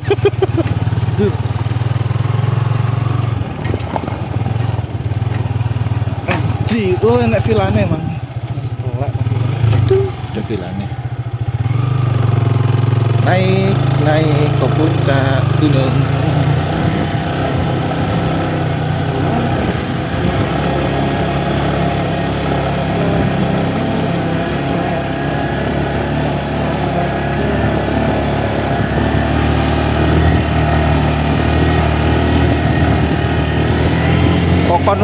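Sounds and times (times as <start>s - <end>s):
road and wind noise: 0.0s - 35.0s
vehicle engine running: 0.0s - 35.0s.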